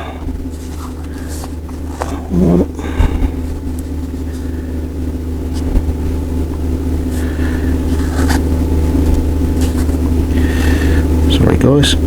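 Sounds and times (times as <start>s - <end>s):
low mechanical hum: 0.0s - 12.0s
hands rustling and clicking: 0.3s - 2.3s.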